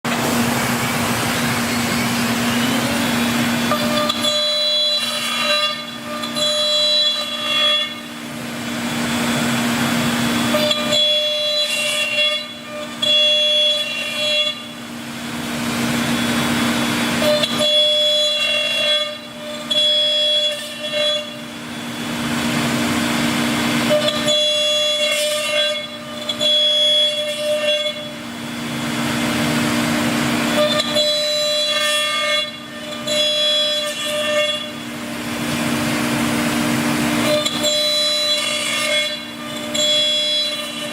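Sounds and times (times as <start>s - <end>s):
steady low machine whines: 0.1s - 5.0s
higher pitched motor whines: 0.1s - 40.9s.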